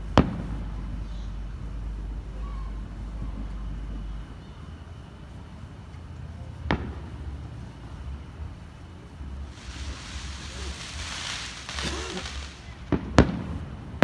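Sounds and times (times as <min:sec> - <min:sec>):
hiss of firework sparks: 0:09.4 - 0:13.8
firework bang: 0:09.4 - 0:14.0.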